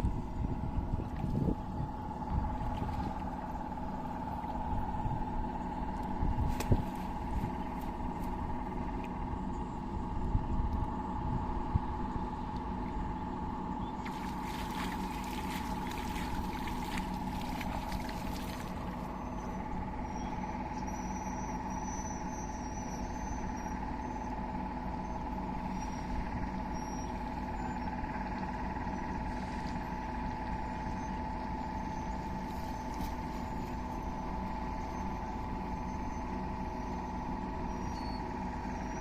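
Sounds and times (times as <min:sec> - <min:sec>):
steady hum: 0:00.0 - 0:39.0
water splashing and trickling: 0:02.2 - 0:04.6, 0:14.0 - 0:19.1.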